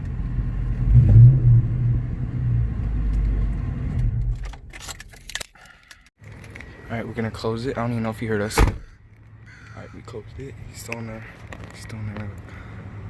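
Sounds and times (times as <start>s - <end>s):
car engine revving and rumbling: 0.0s - 4.9s.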